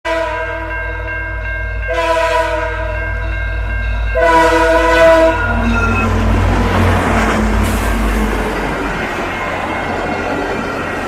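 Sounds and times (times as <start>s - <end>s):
train horn blasts: 0.0s - 1.1s, 1.8s - 3.3s, 4.0s - 8.0s
train rolling by: 0.1s - 11.0s
locomotive rumble: 1.6s - 11.0s.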